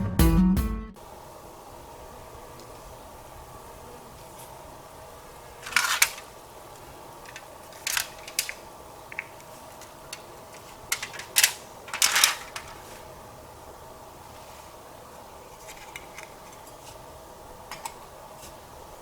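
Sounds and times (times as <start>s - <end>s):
sharp clicks and rustles: 5.6s - 13.1s, 15.5s - 17.0s.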